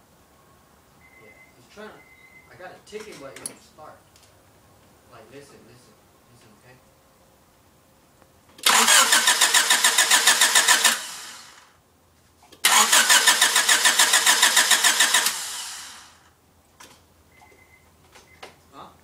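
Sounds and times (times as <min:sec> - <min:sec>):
car engine cranking: 0:08.6 - 0:11.6, 0:12.6 - 0:16.2.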